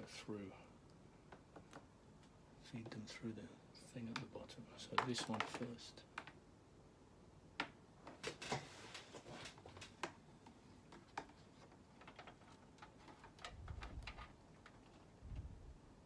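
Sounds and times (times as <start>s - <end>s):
plastic cable clicks and taps: 4.9s - 6.4s.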